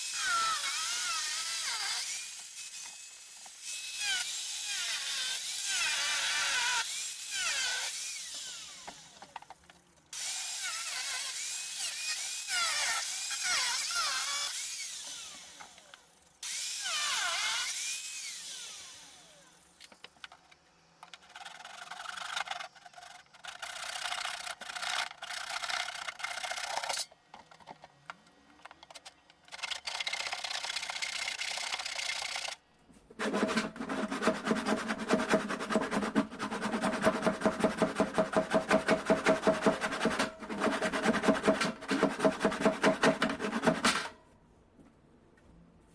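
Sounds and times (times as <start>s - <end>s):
handheld power tool running: 0.0s - 9.4s, 33.2s - 44.2s
harsh grinding with rapid clicks: 28.8s - 32.6s, 33.2s - 44.2s.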